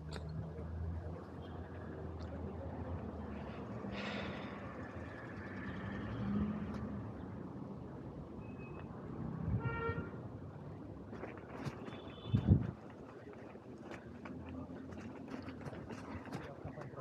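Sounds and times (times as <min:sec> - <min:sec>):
traffic rumble: 0:00.0 - 0:17.0
vehicle horn: 0:09.6 - 0:10.2.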